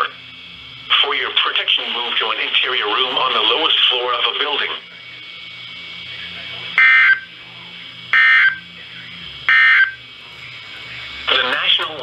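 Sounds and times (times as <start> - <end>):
digital data tone bursts: 6.8 - 7.4, 8.1 - 8.7, 9.5 - 10.0.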